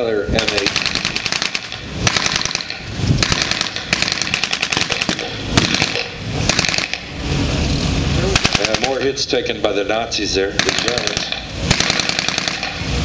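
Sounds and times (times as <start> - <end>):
rapid blank gunfire bursts: 0.4 - 7.1, 8.4 - 9.1, 10.6 - 12.8.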